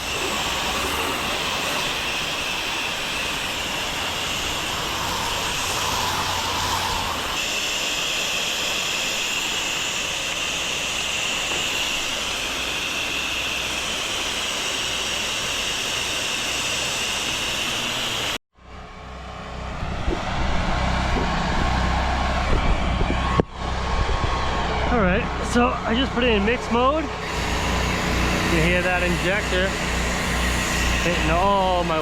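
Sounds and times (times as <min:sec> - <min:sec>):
pressure washer water spray: 0:00.0 - 0:18.3, 0:27.2 - 0:32.0.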